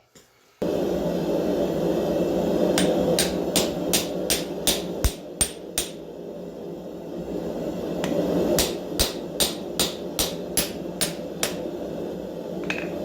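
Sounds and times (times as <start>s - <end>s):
hammer striking steel on anvil: 2.8s - 6.0s, 8.6s - 11.6s.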